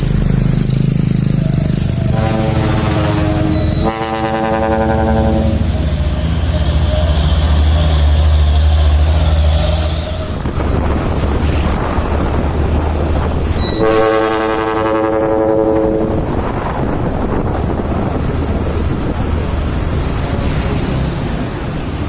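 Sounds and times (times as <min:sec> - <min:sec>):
truck engine rumbling: 0:00.0 - 0:22.0
truck air horn blast: 0:02.0 - 0:06.5, 0:13.6 - 0:16.4.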